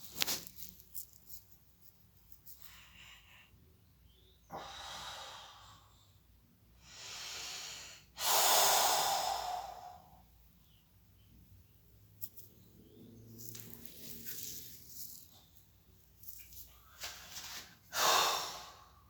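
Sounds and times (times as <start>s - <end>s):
person breathing heavily: 4.5s - 6.0s, 6.8s - 10.2s, 17.9s - 19.0s.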